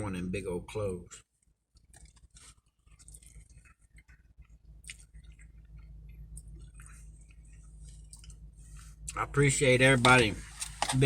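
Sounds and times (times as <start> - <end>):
low steady hum: 0.0 - 11.0
person chewing spaghetti: 1.7 - 9.2.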